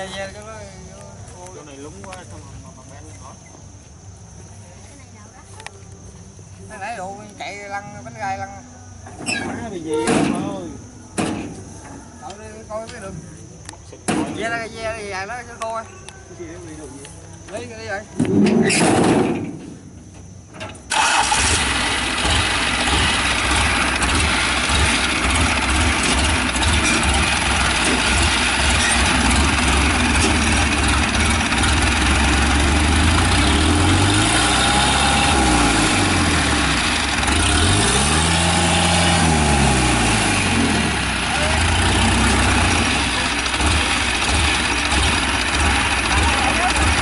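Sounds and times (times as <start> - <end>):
diesel engine revving: 20.9 - 47.0.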